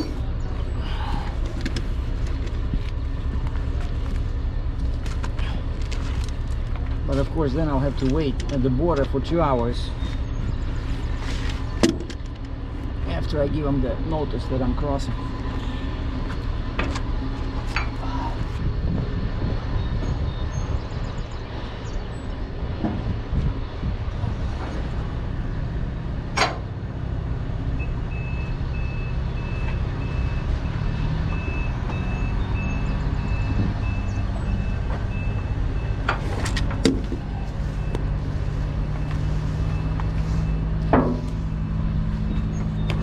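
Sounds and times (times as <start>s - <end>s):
truck diesel engine rumbling: 0.0s - 43.0s
sharp knocks: 40.8s - 41.4s.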